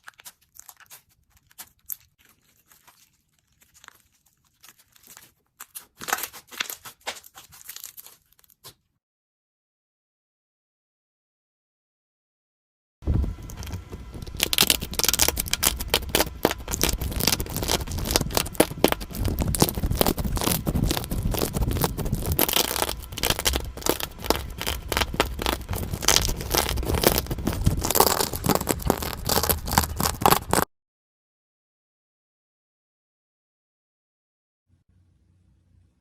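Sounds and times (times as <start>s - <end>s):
slime squished by hand: 0.0s - 8.8s, 13.6s - 30.7s.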